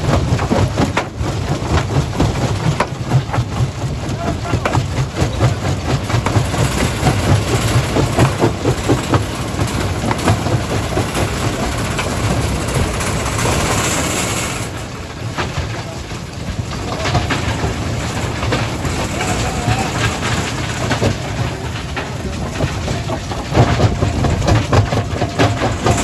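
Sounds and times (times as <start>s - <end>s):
low engine rumble: 0.0s - 26.0s
rock clattering and knocking: 16.8s - 26.0s.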